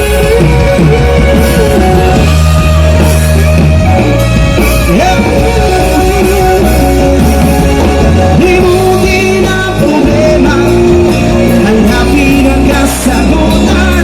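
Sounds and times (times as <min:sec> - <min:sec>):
pop-rock music: 0:00.0 - 0:14.0
person singing: 0:04.6 - 0:14.0.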